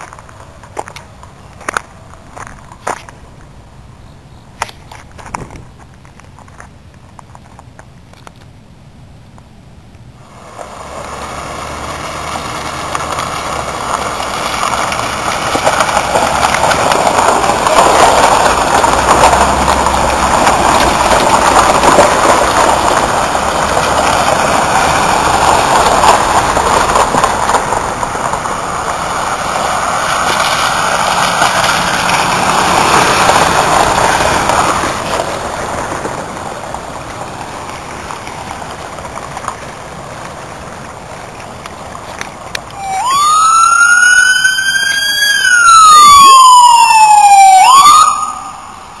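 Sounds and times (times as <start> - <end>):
water rushing under vehicle: 10.2 - 49.0.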